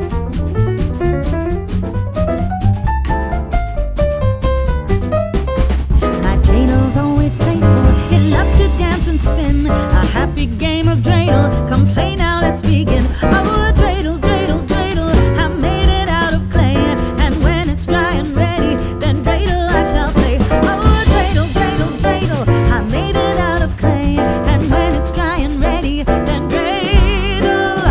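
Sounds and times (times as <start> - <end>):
song with singing and beat: 6.0 - 27.9.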